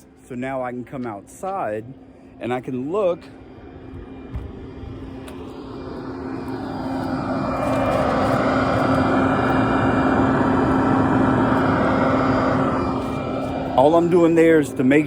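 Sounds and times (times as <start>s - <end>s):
air rushing through duct: 2.0s - 15.0s
electric leaf blower whining: 3.4s - 15.0s.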